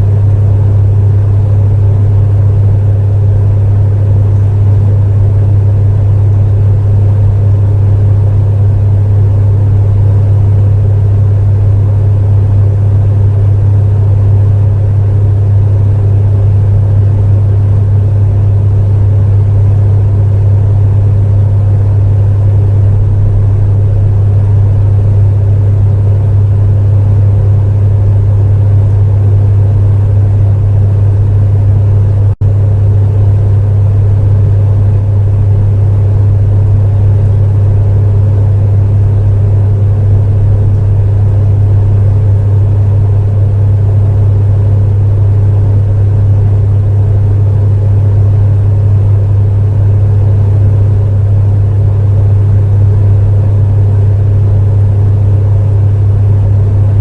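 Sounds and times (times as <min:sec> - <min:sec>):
space heater humming: 0:00.0 - 0:57.0.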